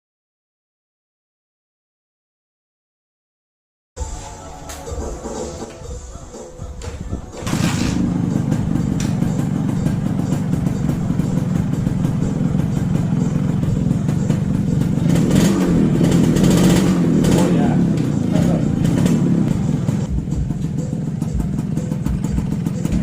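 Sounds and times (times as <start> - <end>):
motorcycle engine running: 5.0 - 23.0.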